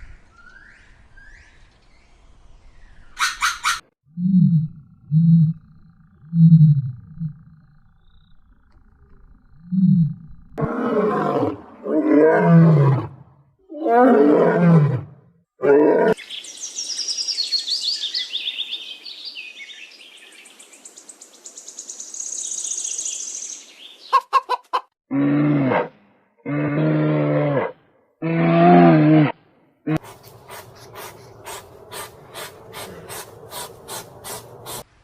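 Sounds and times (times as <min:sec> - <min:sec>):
steady low animal calls: 0:28.2 - 0:34.9.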